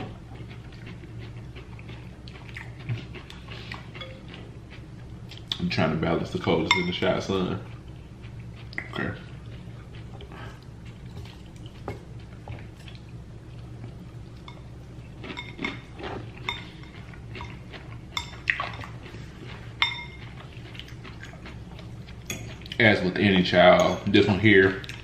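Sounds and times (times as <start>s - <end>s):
steady low hum: 0.0s - 25.0s
cutlery clinking against a dish: 6.7s - 7.1s, 15.3s - 15.8s, 18.2s - 18.9s, 19.8s - 20.3s, 22.2s - 22.8s, 23.7s - 25.0s.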